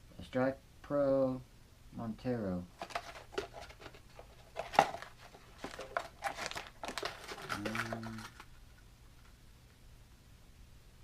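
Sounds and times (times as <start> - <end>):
plastic packaging crinkling: 2.7 - 8.8.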